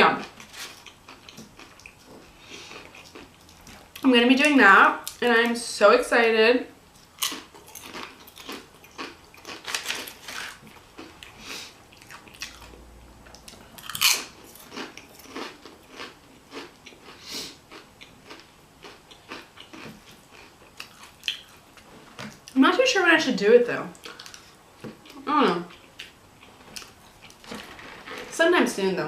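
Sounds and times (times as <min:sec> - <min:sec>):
chewing and biting food: 0:00.3 - 0:04.0, 0:06.9 - 0:22.6.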